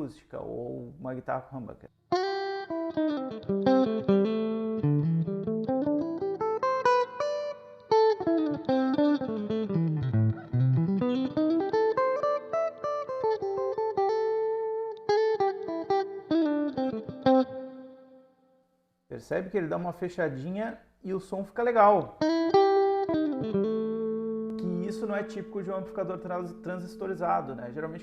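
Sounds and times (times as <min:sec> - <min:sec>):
clean electric guitar single notes: 0:02.2 - 0:18.1, 0:22.2 - 0:28.0.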